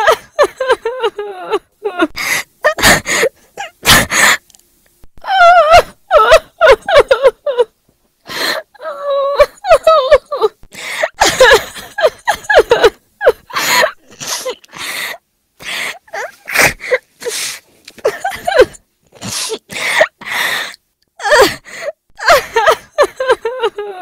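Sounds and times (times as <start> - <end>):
woman sobbing and wailing: 0.0 - 4.3, 5.2 - 17.4, 18.0 - 24.0
woman coughing: 18.0 - 19.7
gasping breaths: 19.1 - 22.0.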